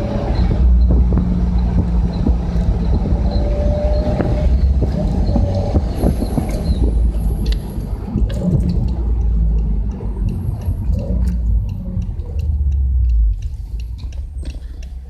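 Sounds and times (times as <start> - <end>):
car engine rumbling while driving: 0.0 - 15.0
light ticks: 4.2 - 15.0.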